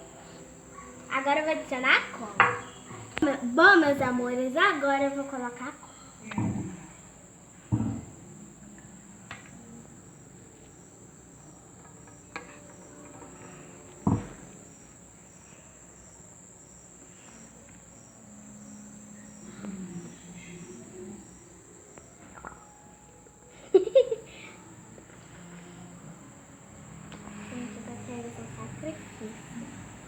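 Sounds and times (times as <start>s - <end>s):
high-pitched insect trill: 0.0s - 30.0s
knocks: 7.7s - 8.2s, 14.0s - 14.6s.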